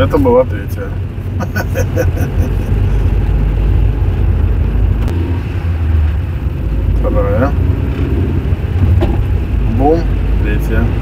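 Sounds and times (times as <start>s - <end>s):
car engine and road hum: 0.0s - 11.0s.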